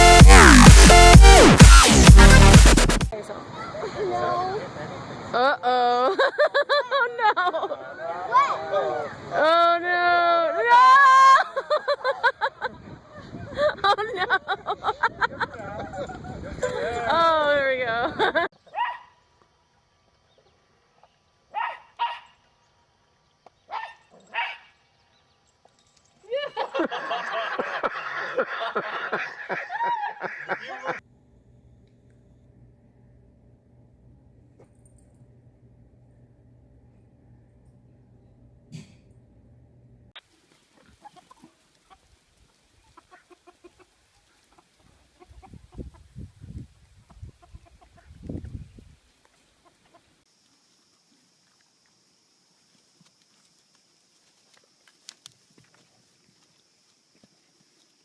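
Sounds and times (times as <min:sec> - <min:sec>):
low thumps: 0:00.0 - 0:03.1
dog barking: 0:18.7 - 0:19.2, 0:21.5 - 0:22.4, 0:23.7 - 0:24.7
chickens clucking: 0:40.7 - 0:46.2, 0:47.1 - 0:48.6.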